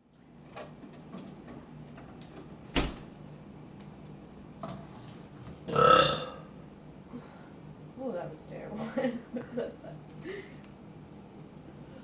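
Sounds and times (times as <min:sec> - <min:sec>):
woman burping: 0:05.7 - 0:06.4.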